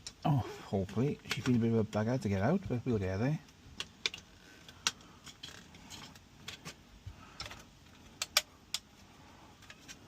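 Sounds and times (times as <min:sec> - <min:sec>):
plastic clips clicking and tapping: 0:00.9 - 0:02.0, 0:07.4 - 0:08.9.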